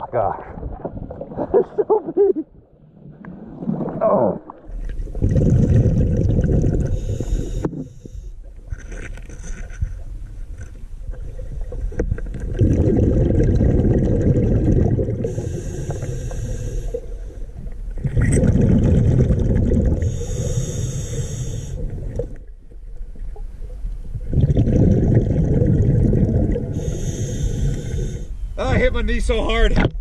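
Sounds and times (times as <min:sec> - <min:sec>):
underwater exhaled bubbles rumbling: 0:00.0 - 0:09.1, 0:09.9 - 0:28.2
regulator hiss: 0:15.3 - 0:17.3, 0:20.1 - 0:21.8, 0:26.8 - 0:28.4.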